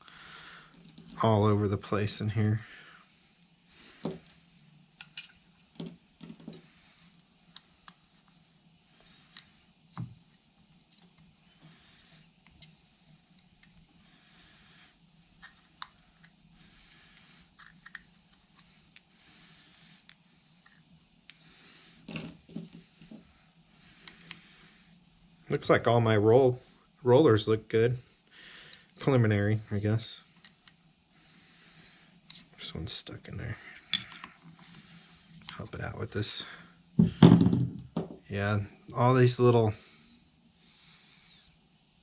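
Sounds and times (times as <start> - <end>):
faint hiss: 0.0 - 42.0.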